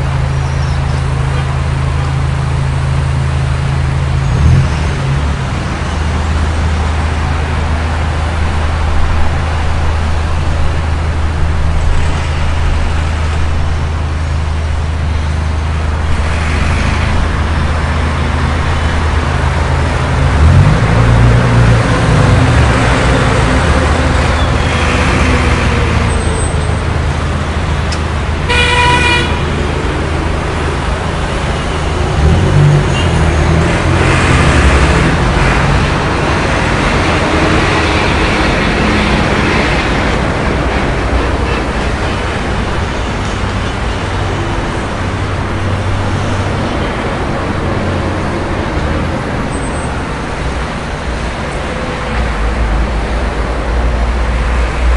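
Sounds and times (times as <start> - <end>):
traffic engines hum: 0.0 - 54.9
car horn honk: 28.4 - 29.5.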